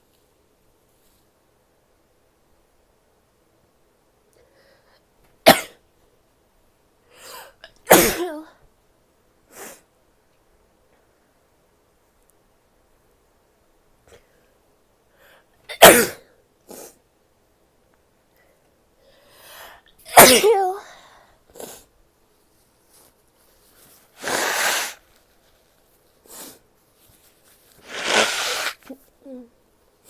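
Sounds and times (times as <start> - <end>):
woman sneezing: 7.9 - 8.5, 15.7 - 16.9, 20.1 - 20.9, 24.2 - 25.0, 27.8 - 29.0
faint sniffs: 9.5 - 9.9, 22.9 - 29.4
nose blow: 24.2 - 25.0, 27.8 - 29.0.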